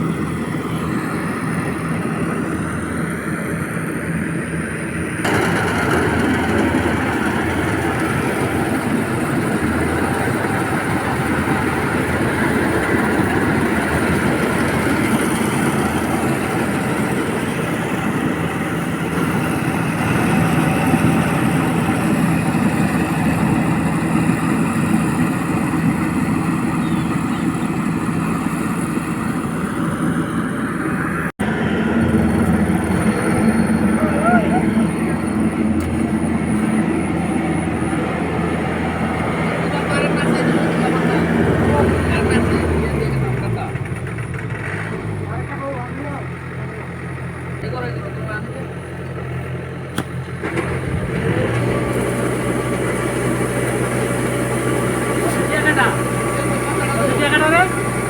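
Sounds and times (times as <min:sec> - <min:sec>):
harvesting machine engine: 0:00.0 - 0:58.0.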